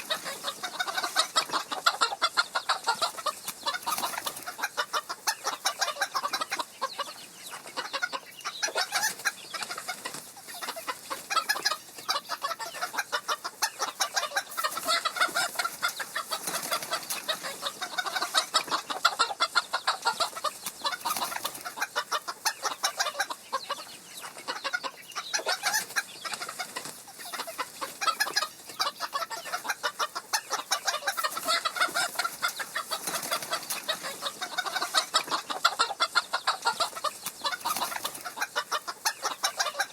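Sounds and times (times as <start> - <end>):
chickens clucking: 0.0 - 39.9.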